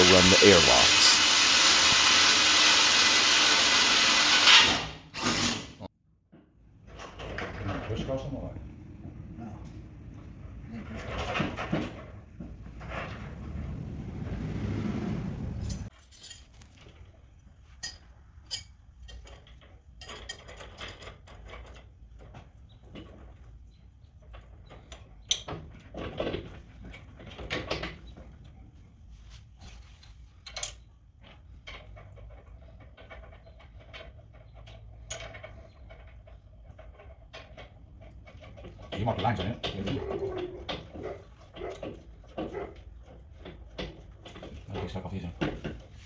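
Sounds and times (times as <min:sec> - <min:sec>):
metal tools clinking: 0:16.0 - 0:16.8.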